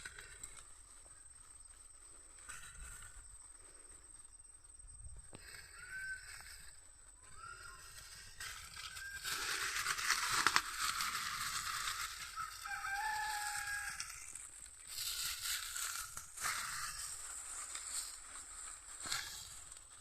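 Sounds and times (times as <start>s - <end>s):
rustling crackling noise: 0.0s - 4.2s, 5.4s - 20.0s
rooster crowing: 5.7s - 9.8s, 11.5s - 14.5s.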